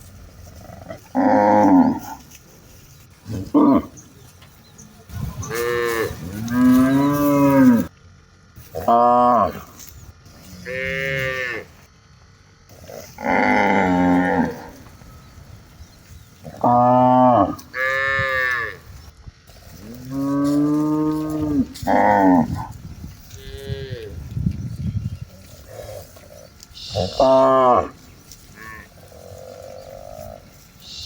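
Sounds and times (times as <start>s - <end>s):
cattle mooing: 0.5s - 2.3s, 3.3s - 4.0s, 5.2s - 7.9s, 8.8s - 11.8s, 12.7s - 15.3s, 16.4s - 24.4s, 25.3s - 31.0s.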